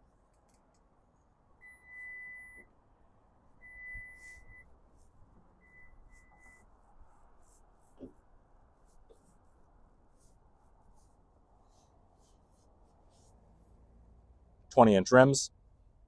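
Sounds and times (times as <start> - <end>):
high-pitched electronic beeps: 1.6 - 2.7, 3.6 - 4.6.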